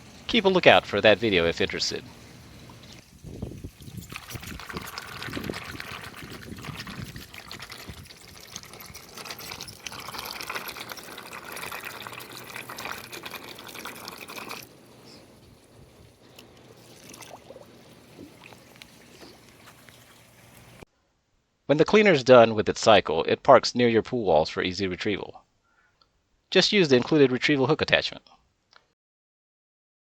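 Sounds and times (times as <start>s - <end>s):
pool water splashing and trickling: 0.0s - 20.9s.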